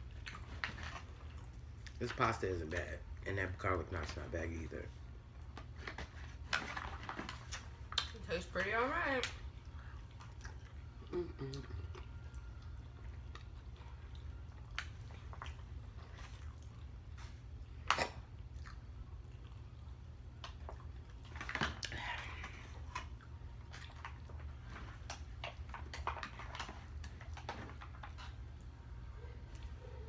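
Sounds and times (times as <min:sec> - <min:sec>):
person chewing pasta: 0:00.0 - 0:02.0, 0:09.5 - 0:29.6.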